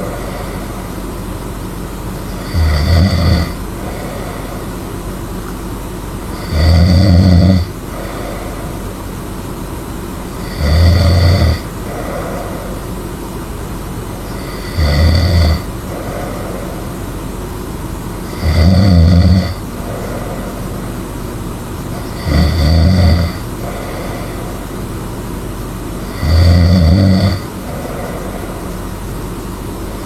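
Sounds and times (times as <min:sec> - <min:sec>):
person snoring loudly: 0:00.0 - 0:01.0, 0:02.2 - 0:04.8, 0:06.2 - 0:09.0, 0:10.4 - 0:13.0, 0:14.2 - 0:17.2, 0:18.1 - 0:21.1, 0:21.9 - 0:24.9, 0:26.0 - 0:29.1
soft breath: 0:00.0 - 0:01.4, 0:03.7 - 0:05.2, 0:07.8 - 0:09.2, 0:11.6 - 0:13.5, 0:15.6 - 0:18.3, 0:19.5 - 0:22.2, 0:23.4 - 0:25.3, 0:27.4 - 0:30.0
steady background noise: 0:00.0 - 0:30.0.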